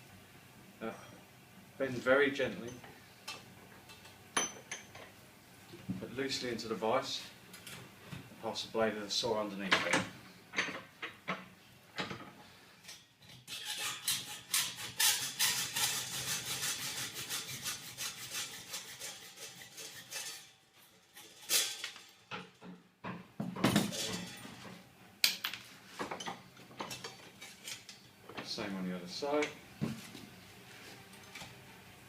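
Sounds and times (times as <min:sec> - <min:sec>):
hacksaw cutting metal: 0:13.4 - 0:20.5.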